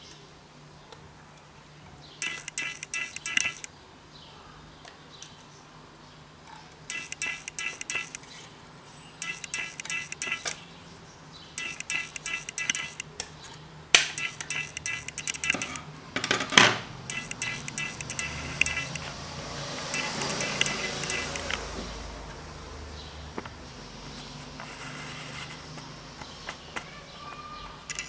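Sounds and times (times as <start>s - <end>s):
bursts of rapid clicking: 2.2s - 3.7s, 6.9s - 8.4s, 9.2s - 10.6s, 11.6s - 13.2s, 14.0s - 15.9s, 16.8s - 22.0s, 27.8s - 28.0s.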